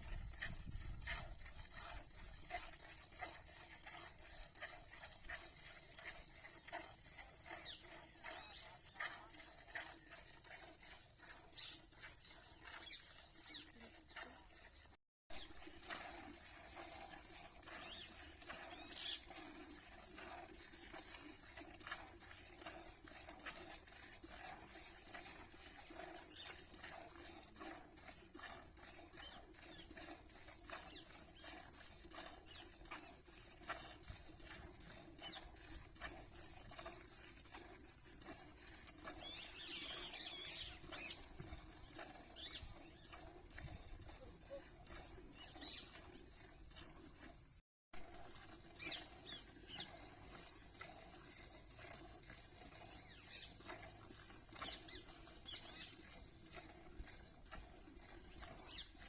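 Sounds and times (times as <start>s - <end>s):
milk squirting into a pail: 15.4s - 59.0s.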